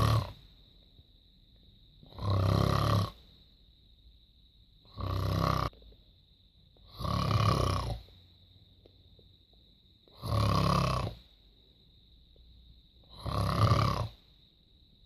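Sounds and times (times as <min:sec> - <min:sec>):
loud rasping snores: 0:00.0 - 0:00.4, 0:02.0 - 0:03.3, 0:04.8 - 0:05.8, 0:06.8 - 0:08.1, 0:10.1 - 0:11.3, 0:13.0 - 0:14.2.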